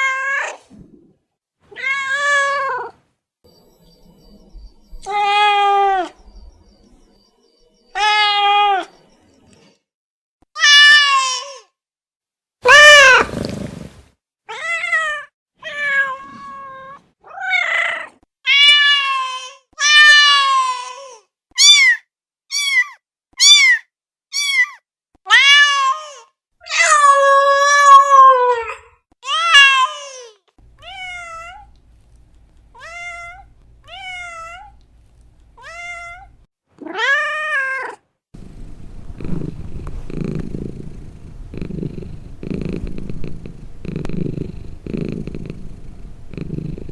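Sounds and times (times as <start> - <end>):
cat purring: 3.5 - 7.4, 8.0 - 9.0, 12.7 - 14.1, 38.4 - 46.9
cats meowing: 4.9 - 6.2, 8.0 - 8.9, 12.7 - 13.7, 38.4 - 46.9.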